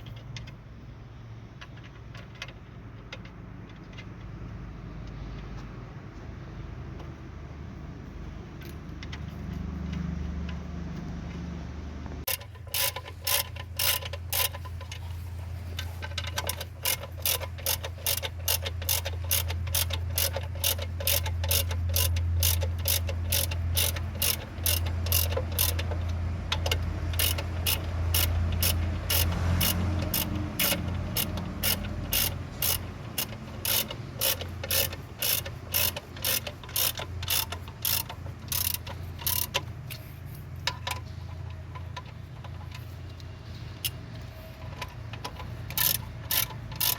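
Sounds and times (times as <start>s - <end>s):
ratchet wrench clicking: 12.3s - 46.9s.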